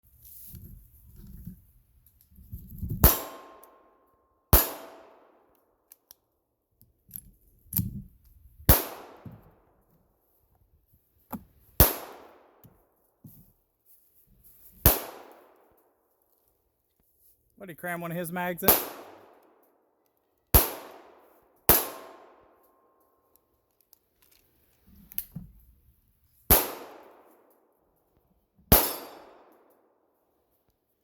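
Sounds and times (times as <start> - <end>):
pistol shots with echo: 4.6 - 5.2, 8.7 - 9.2, 14.9 - 15.5, 18.7 - 19.4, 20.6 - 22.4, 26.5 - 27.3, 28.7 - 29.5.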